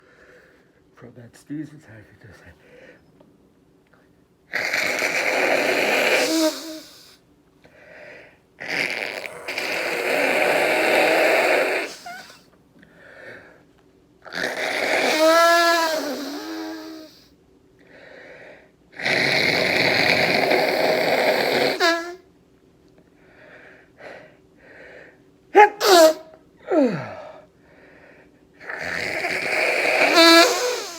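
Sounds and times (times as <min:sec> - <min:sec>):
man blowing his nose: 0:04.5 - 0:07.1, 0:08.6 - 0:12.4, 0:14.3 - 0:17.2, 0:19.0 - 0:22.2, 0:25.6 - 0:27.3, 0:28.6 - 0:30.9.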